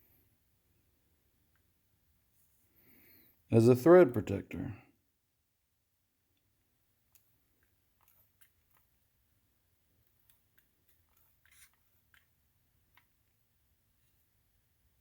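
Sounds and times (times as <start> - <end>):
small metal clicks and scrapes: 7.1 - 9.0, 10.0 - 13.4.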